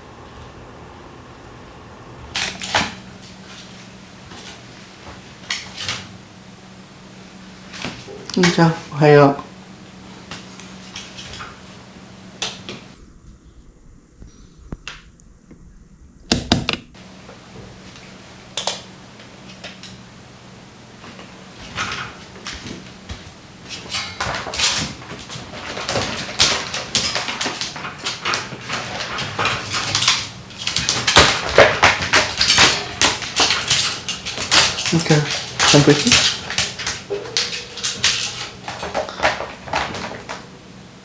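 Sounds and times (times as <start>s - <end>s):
paws scrabbling and clicking: 2.2s - 13.0s, 17.0s - 40.8s
clatter: 21.2s - 40.4s.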